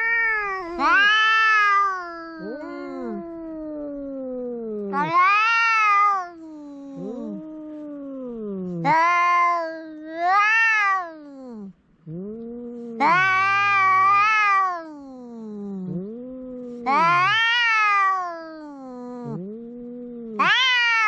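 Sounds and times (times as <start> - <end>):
cat meowing loudly: 0.0 - 3.6, 4.9 - 6.4, 8.8 - 11.7, 13.0 - 15.4, 16.8 - 19.4, 20.4 - 21.0
quiet low cat meows: 0.0 - 21.0.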